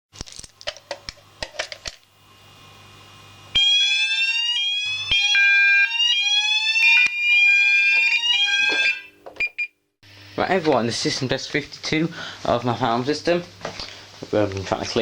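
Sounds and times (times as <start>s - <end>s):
fire alarm sounders sweeping: 3.5s - 9.7s.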